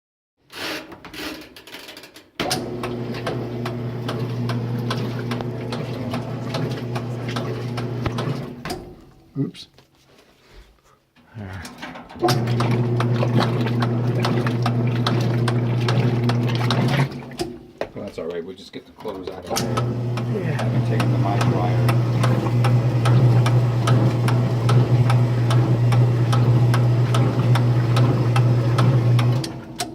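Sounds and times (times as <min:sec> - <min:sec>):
washing machine humming: 0:02.4 - 0:09.3, 0:11.6 - 0:17.8, 0:19.0 - 0:29.9
regular clicking: 0:19.5 - 0:29.9.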